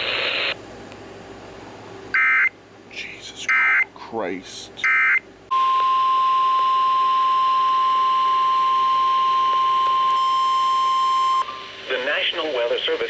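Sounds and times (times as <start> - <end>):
steady high alarm tone: 4.8 - 11.6.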